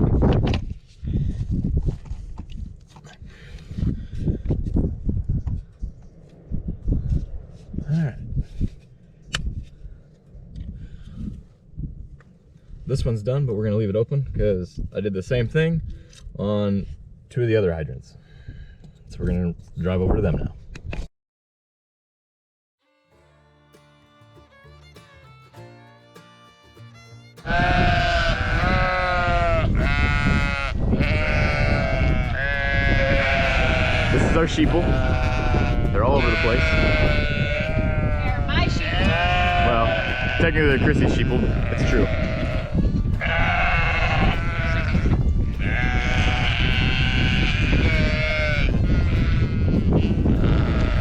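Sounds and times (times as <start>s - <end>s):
wind noise on microphone: 0.0s - 17.3s, 18.2s - 21.1s, 27.4s - 51.0s
soft guitar music: 22.8s - 49.4s
sheep bleating: 26.2s - 51.0s
steady low rumble: 27.6s - 50.6s.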